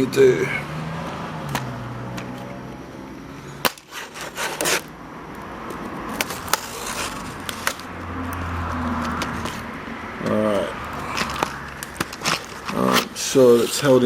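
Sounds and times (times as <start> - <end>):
packaging scraping: 3.7 - 4.9, 6.1 - 7.9, 11.0 - 13.8
packaging clicks and knocks: 11.1 - 13.1.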